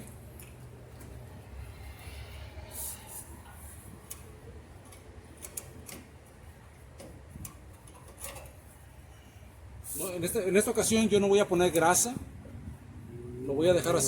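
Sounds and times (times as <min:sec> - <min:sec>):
light clicks and taps of parts: 0:00.0 - 0:01.1, 0:04.0 - 0:08.6.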